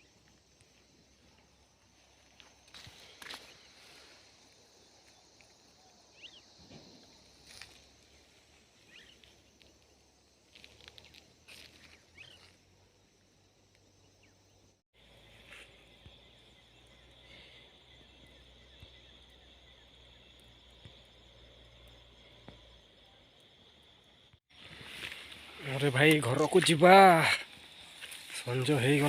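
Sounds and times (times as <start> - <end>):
high insect drone: 0.0 - 29.0
short bird chirps: 8.9 - 9.3, 11.8 - 12.5.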